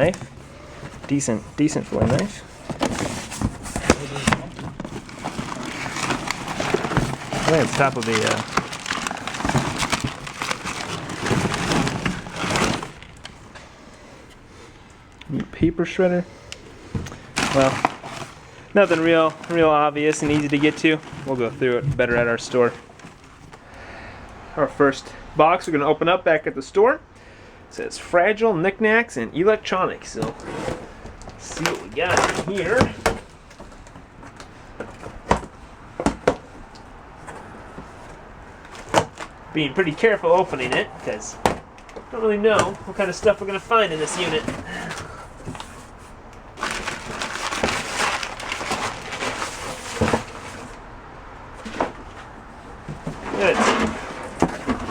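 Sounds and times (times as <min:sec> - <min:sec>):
hard objects clattering in box: 0:00.0 - 0:13.7, 0:16.6 - 0:23.6, 0:30.1 - 0:54.9
cardboard box clicks and knocks: 0:02.0 - 0:13.1, 0:31.6 - 0:37.9, 0:38.7 - 0:39.3, 0:40.5 - 0:42.0.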